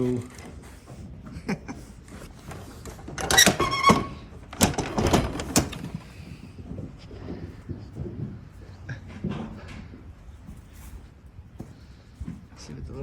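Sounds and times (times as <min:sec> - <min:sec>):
gate knocking and rattling: 0:02.9 - 0:06.2
gate squeak: 0:03.2 - 0:05.8.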